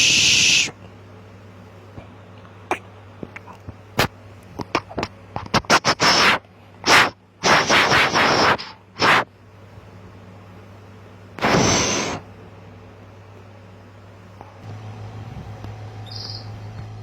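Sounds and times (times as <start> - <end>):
steady low hum: 0.0 - 17.0
short scraping bursts: 5.5 - 9.3, 11.4 - 12.2.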